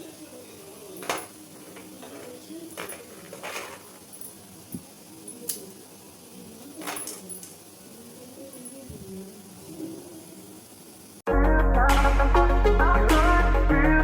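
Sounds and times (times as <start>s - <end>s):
kitchen utensils and dishes clinking: 0.9s - 4.4s.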